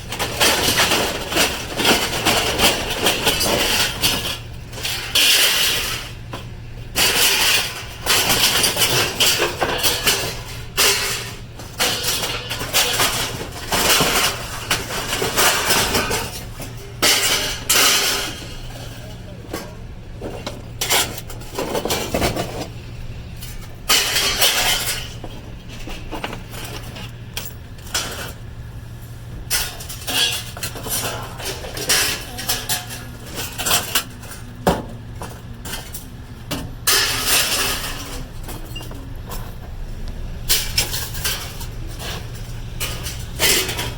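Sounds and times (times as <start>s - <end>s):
engine idling: 0.0s - 43.9s
scrap metal clattering: 0.0s - 43.9s.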